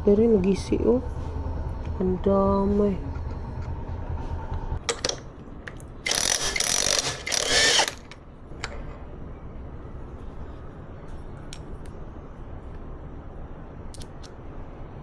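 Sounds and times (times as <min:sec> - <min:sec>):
rasping ratchet burst: 0:06.0 - 0:08.2.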